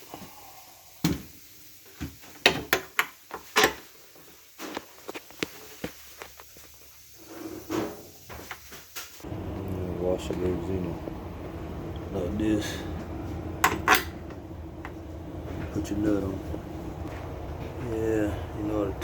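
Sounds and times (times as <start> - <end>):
knocks and clatters of parts and tools: 2.0 - 3.9.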